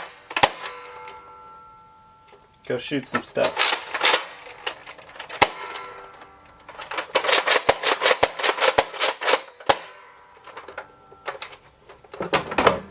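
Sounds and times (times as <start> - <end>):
faint ringing: 0.0 - 12.9
sharp hard clicks and clacks: 2.5 - 12.3.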